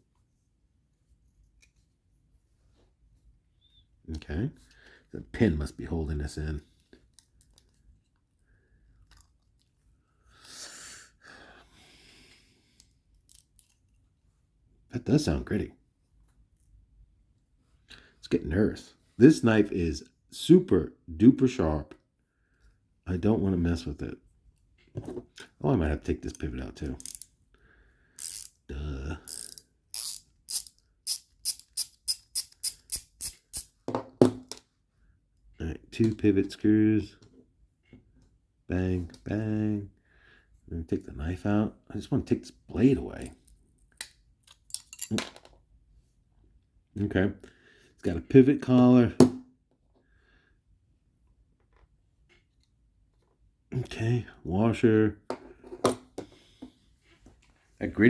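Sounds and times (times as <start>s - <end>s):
gritty screw thread grinding: 27.0s - 27.3s, 28.2s - 28.6s, 29.2s - 33.8s
screw ticking: 28.2s - 28.5s, 29.3s - 33.7s.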